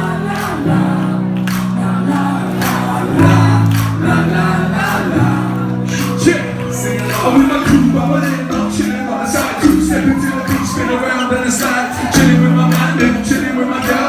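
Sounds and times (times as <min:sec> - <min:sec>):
crowd singing along: 0:00.0 - 0:14.0
live pop band: 0:00.0 - 0:14.0.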